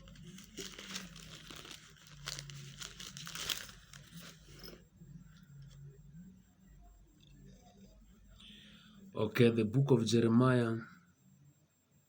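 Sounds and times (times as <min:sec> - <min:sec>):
paper pages rustling: 0:00.0 - 0:04.8.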